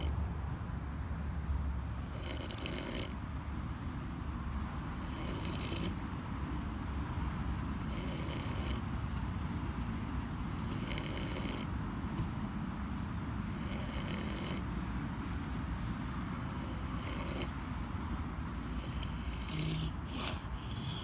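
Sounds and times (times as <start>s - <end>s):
pig snoring: 2.0s - 3.2s, 4.8s - 6.7s, 7.8s - 8.9s, 10.6s - 11.8s, 13.4s - 14.7s, 16.3s - 21.0s.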